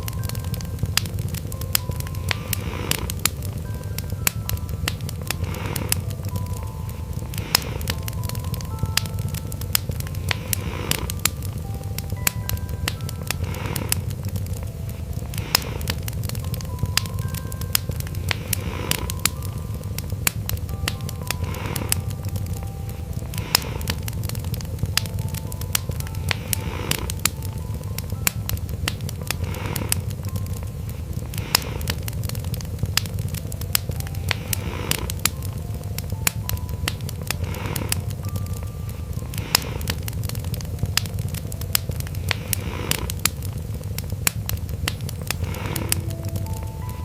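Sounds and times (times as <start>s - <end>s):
wood fire crackling and popping: 0.0s - 47.0s
cat purring: 39.3s - 47.0s.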